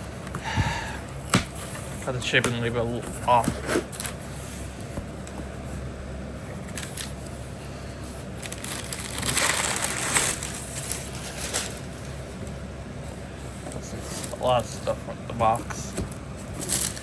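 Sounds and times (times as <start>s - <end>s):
cardboard packaging rustling: 6.6s - 12.6s, 13.7s - 17.0s.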